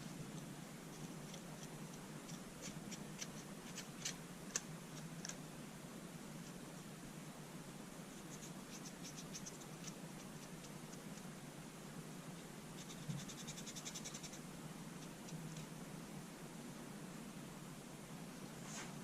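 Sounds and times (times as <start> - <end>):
faint quick scratching: 18.6 - 19.0.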